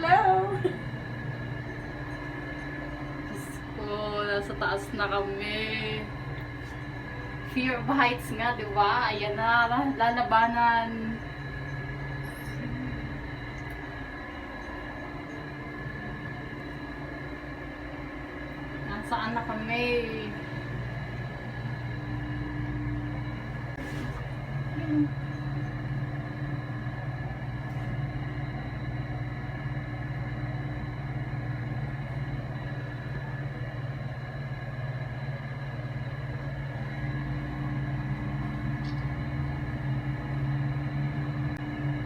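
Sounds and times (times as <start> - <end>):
machine hum with constant tones: 0.0 - 42.0.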